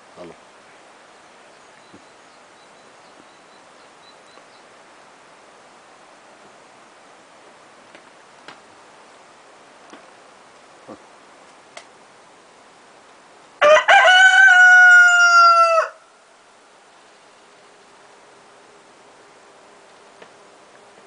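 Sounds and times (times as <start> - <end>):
rooster crowing: 13.6 - 16.2.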